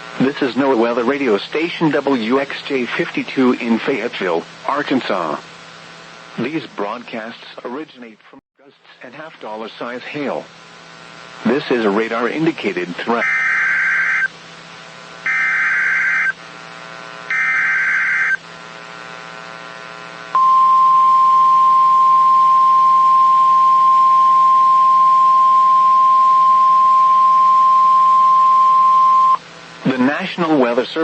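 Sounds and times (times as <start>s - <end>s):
buzzing data screech: 13.2s - 14.3s, 15.3s - 16.4s, 17.3s - 18.4s
steady warning alarm tone: 13.2s - 14.3s, 15.2s - 16.4s, 17.3s - 18.4s.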